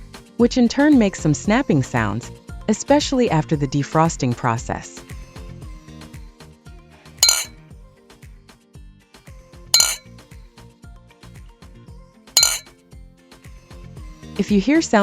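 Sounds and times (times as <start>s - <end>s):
glass bottles clinking: 7.2s - 7.5s, 9.8s - 10.0s, 12.4s - 12.7s.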